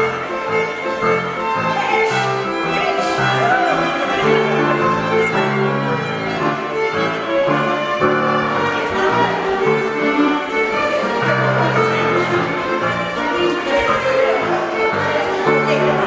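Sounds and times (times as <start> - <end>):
fiddle jig music: 0.0 - 16.0.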